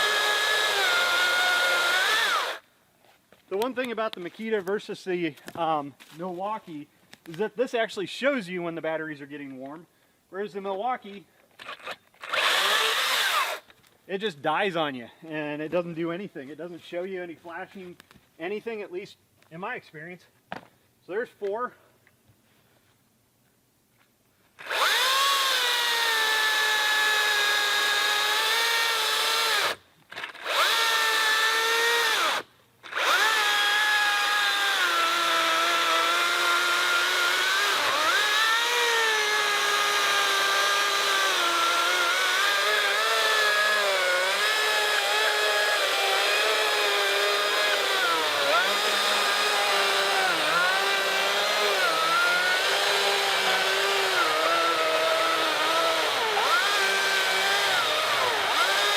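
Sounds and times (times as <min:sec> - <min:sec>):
electric chainsaw cutting log: 0:00.0 - 0:02.6, 0:11.6 - 0:13.7, 0:24.6 - 0:58.9.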